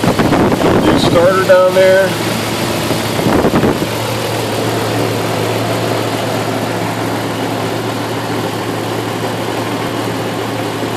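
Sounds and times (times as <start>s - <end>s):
car engine idling: 0.0s - 10.9s.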